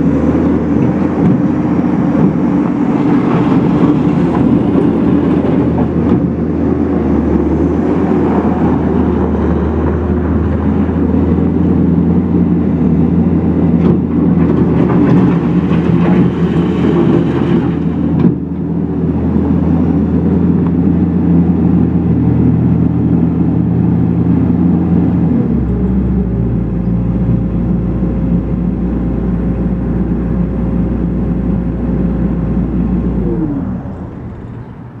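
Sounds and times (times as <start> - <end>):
loader diesel engine running: 0.0 - 35.0.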